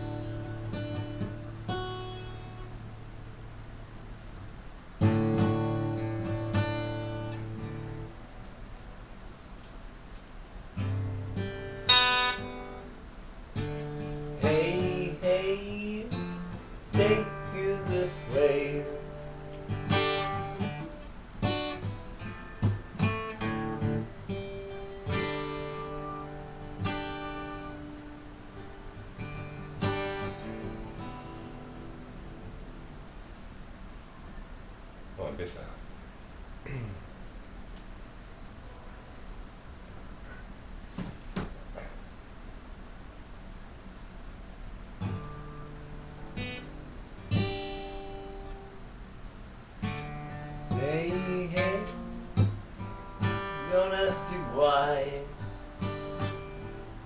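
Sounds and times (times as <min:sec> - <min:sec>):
acoustic guitar strummed chords: 0:00.0 - 0:08.8, 0:10.6 - 0:33.2, 0:44.9 - 0:49.0, 0:49.7 - 0:57.0.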